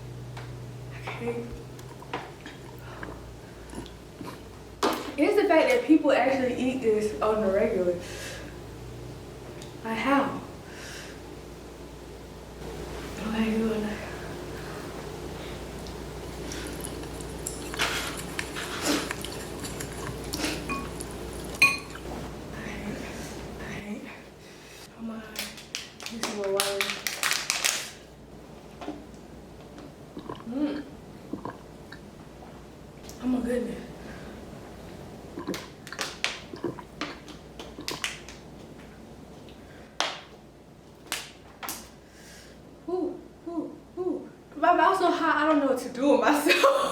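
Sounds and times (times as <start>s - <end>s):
person chewing: 1.8s - 4.6s, 15.8s - 22.1s, 30.2s - 30.5s, 31.3s - 32.0s, 35.4s - 38.2s
person slurping noodles: 2.7s - 4.5s, 16.5s - 20.8s, 30.2s - 31.6s, 35.4s - 35.7s, 36.5s - 36.9s
utensil clinking against bowl: 20.7s - 22.0s.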